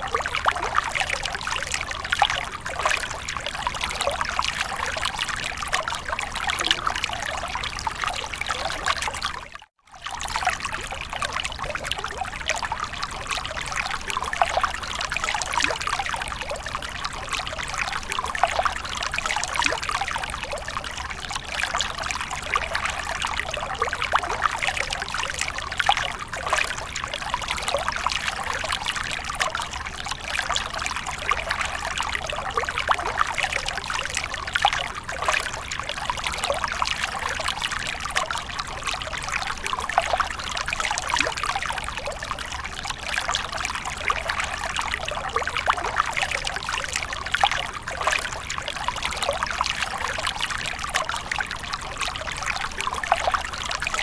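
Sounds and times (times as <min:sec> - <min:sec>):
water splashing and trickling: 0:00.0 - 0:54.0.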